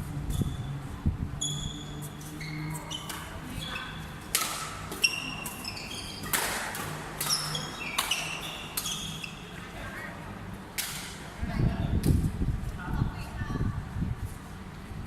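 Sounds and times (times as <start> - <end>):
shoes squeaking on court floor: 1.4 - 9.8.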